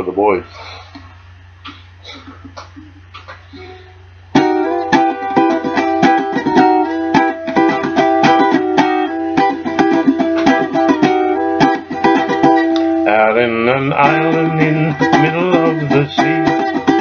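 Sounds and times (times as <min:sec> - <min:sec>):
ukulele strumming: 0:04.3 - 0:17.0.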